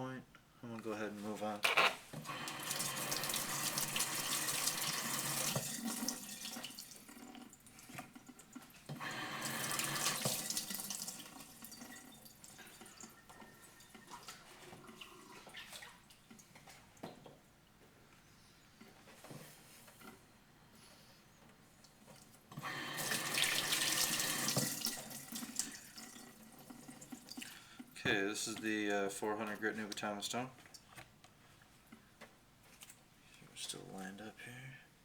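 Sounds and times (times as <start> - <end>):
water running from a tap: 2.3 - 14.3, 22.6 - 27.5.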